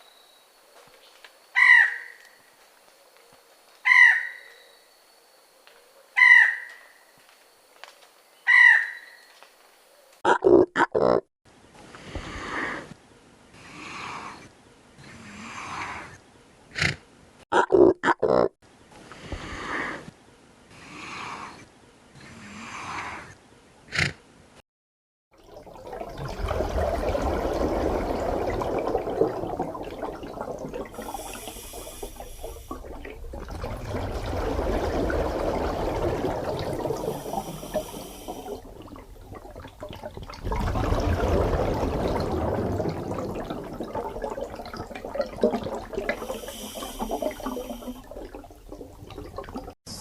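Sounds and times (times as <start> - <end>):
rushing splashing water: 25.3 - 49.8.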